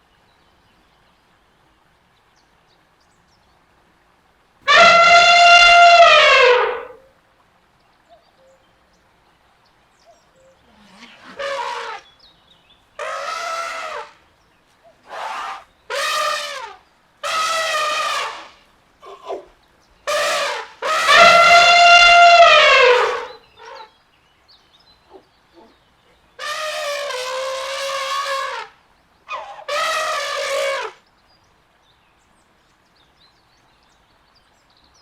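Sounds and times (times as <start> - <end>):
elephant trumpeting: 4.7 - 7.0, 10.8 - 12.1, 13.0 - 14.2, 15.0 - 19.5, 20.1 - 23.9, 26.4 - 31.0.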